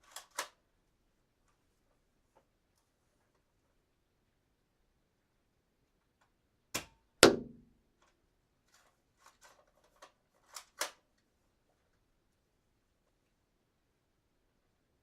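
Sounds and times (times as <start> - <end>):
dart gun shot: 6.8 - 7.7.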